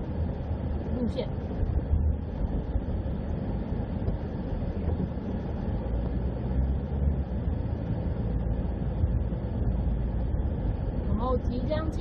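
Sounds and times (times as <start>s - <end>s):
vehicle engine and tyre rumble: 0.0s - 12.0s.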